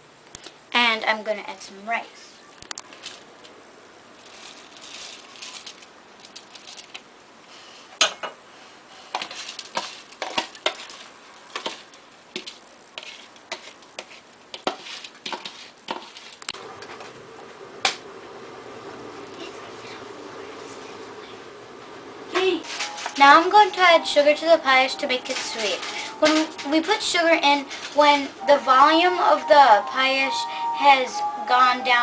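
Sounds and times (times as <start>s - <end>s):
metal spoon scraping a pot: 25.2s - 28.3s.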